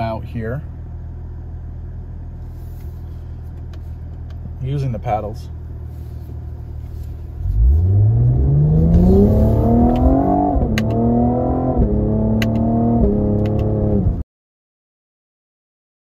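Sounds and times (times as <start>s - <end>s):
car engine accelerating: 6.2s - 14.2s.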